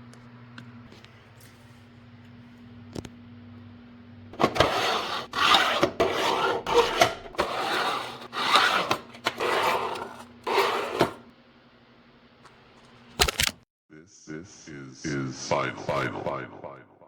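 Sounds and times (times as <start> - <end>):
plastic parts scraping together: 4.4 - 11.2.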